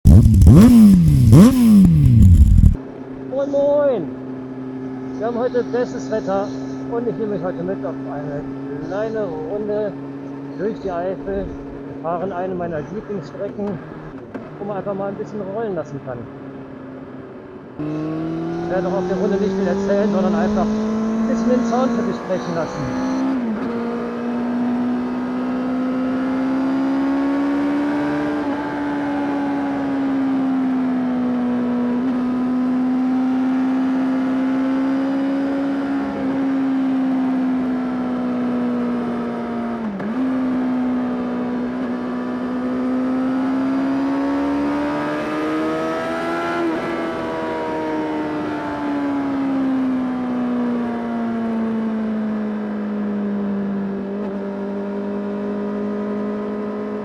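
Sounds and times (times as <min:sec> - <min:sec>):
motorcycle engine at high revs: 0:00.0 - 0:02.8, 0:17.8 - 0:50.0, 0:54.0 - 0:57.0.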